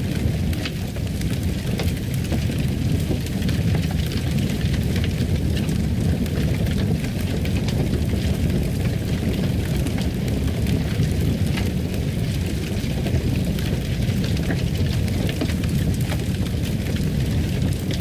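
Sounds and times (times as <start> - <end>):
fire crackling in a fireplace: 0.0 - 18.0.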